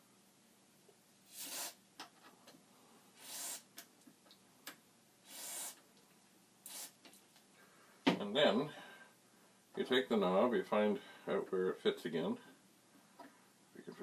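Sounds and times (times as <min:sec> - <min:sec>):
aerosol spray hisses: 0:01.2 - 0:01.8, 0:03.2 - 0:03.7, 0:05.2 - 0:05.8, 0:06.6 - 0:07.0.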